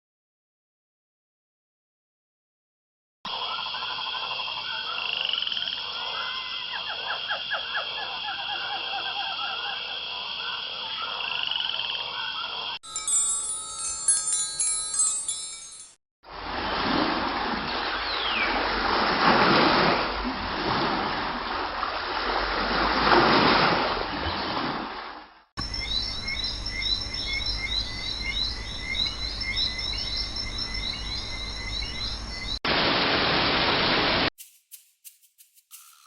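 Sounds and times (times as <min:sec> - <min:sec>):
birds chirping: 0:12.9 - 0:15.9.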